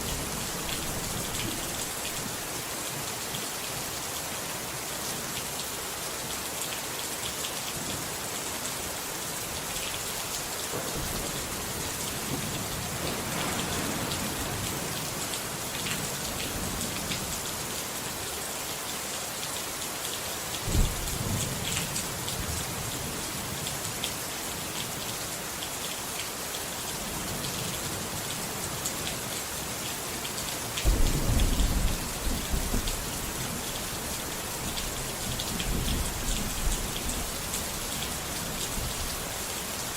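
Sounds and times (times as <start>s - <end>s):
steady rain falling: 0.0s - 39.9s
thunder rumbling: 10.8s - 15.2s, 20.7s - 21.6s, 30.8s - 37.3s.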